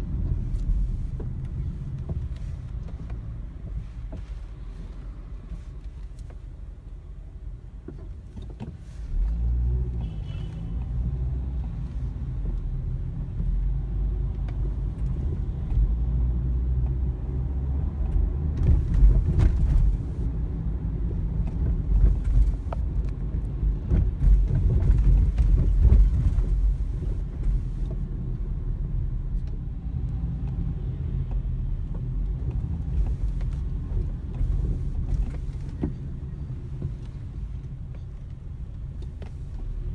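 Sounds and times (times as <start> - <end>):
car engine rumble: 0.0 - 39.9
steering knocks and rattles: 0.0 - 39.9.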